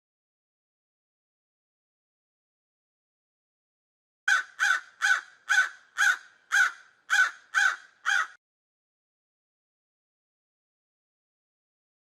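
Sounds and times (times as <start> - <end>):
crow cawing: 4.3 - 8.4.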